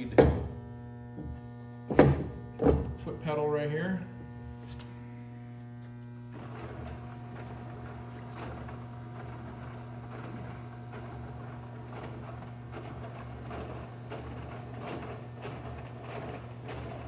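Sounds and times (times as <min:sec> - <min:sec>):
braiding machine clattering: 0:00.0 - 0:00.6, 0:06.3 - 0:17.0
electrical hum: 0:00.0 - 0:17.0.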